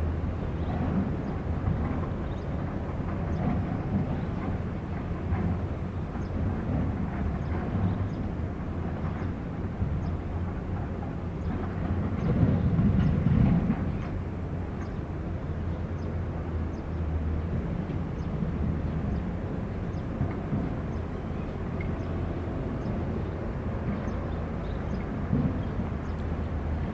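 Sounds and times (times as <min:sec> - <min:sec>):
heavy machinery diesel engine: 0:00.0 - 0:26.9.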